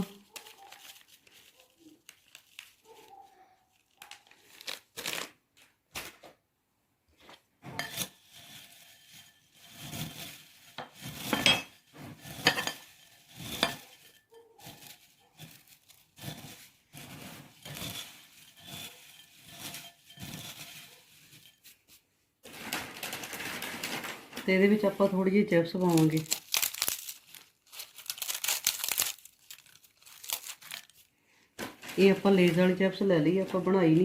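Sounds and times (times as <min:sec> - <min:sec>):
spoon scraping in a bowl: 0:07.6 - 0:22.0.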